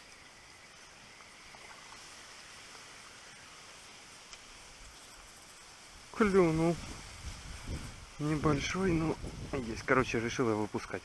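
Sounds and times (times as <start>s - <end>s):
faint steady hiss: 0.0s - 11.0s
soft ticks: 4.2s - 5.1s.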